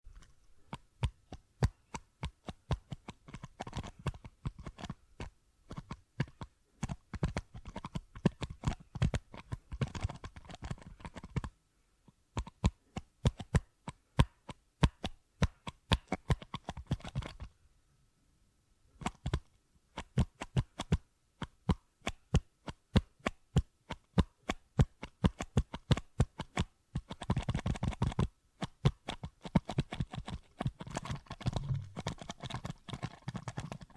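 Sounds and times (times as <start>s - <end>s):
fingertips tapping plastic bottle: 0.1s - 11.6s, 12.3s - 17.5s, 19.0s - 33.9s
rubbing and crackling plastic: 24.9s - 33.9s.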